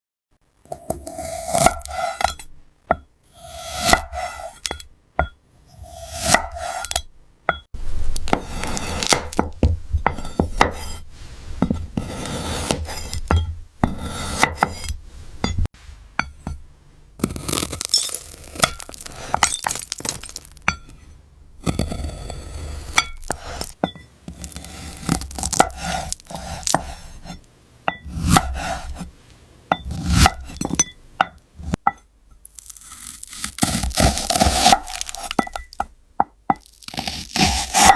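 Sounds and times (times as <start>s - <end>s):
knife cutting fruit: 0.7s - 2.5s, 3.4s - 4.9s, 5.7s - 7.1s, 8.1s - 11.0s, 11.6s - 15.6s, 17.2s - 20.6s, 21.6s - 29.1s, 29.7s - 30.9s, 32.5s - 35.9s, 36.6s - 37.9s
knife slicing and scraping: 0.7s - 2.5s, 3.3s - 4.9s, 5.6s - 16.6s, 17.2s - 31.0s, 31.6s - 31.9s, 32.5s - 35.9s, 36.5s - 37.9s.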